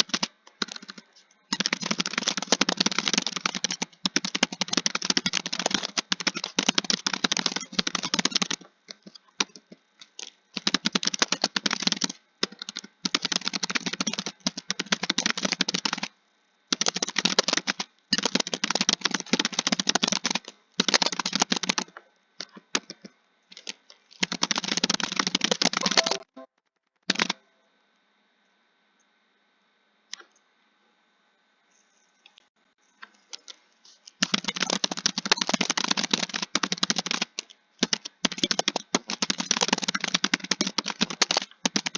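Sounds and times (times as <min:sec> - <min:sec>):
fast typing on keyboard: 0:00.0 - 0:26.3, 0:27.0 - 0:27.4, 0:34.2 - 0:41.9.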